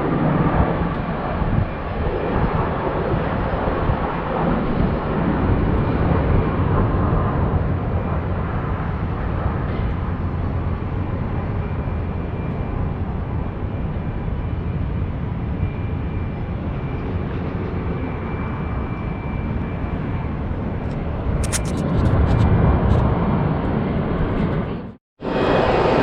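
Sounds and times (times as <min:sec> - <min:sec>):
jet engines rumbling: 0:00.0 - 0:26.0.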